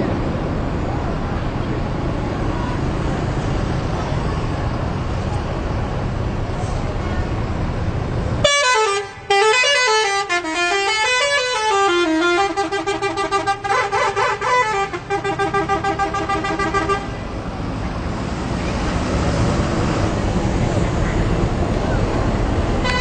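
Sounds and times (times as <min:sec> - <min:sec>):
street noise: 0:00.0 - 0:23.0
musical air horn melody: 0:08.4 - 0:17.1.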